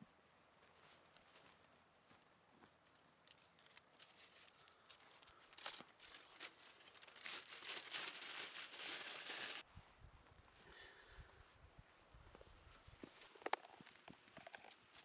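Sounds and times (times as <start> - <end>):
crinkling and rustling: 3.2 - 9.6, 13.0 - 15.0.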